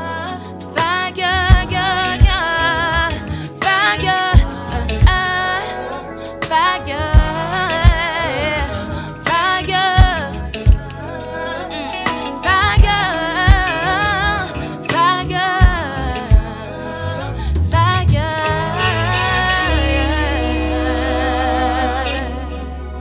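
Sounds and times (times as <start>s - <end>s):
live soul band music: 0.0s - 23.0s
held bass note: 6.9s - 14.8s, 17.4s - 23.0s.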